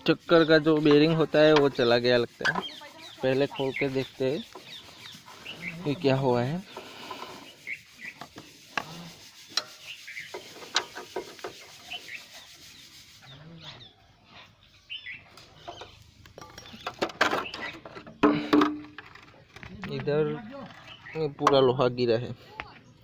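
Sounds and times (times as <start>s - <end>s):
metal tools clinking and scraping: 8.9s - 11.8s, 15.6s - 21.1s.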